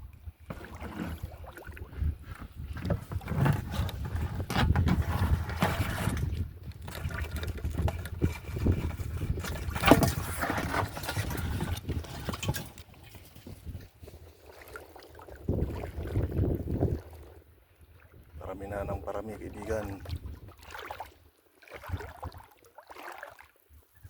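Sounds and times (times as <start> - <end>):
water sloshing and splashing: 0.0 - 24.0
knocks and handling noise: 2.2 - 13.8.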